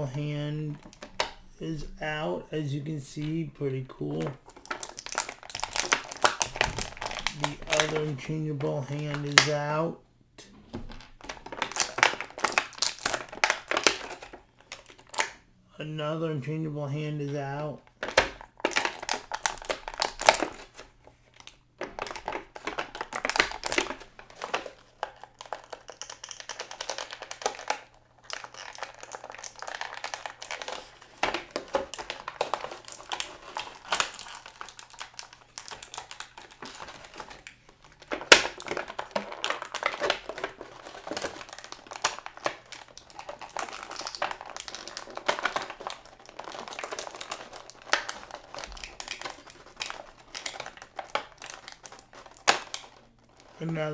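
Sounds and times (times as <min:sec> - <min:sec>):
plastic packaging crinkling: 0:00.0 - 0:09.8, 0:10.7 - 0:15.4, 0:17.4 - 0:53.9
plastic clicks: 0:00.7 - 0:02.0, 0:04.1 - 0:09.6.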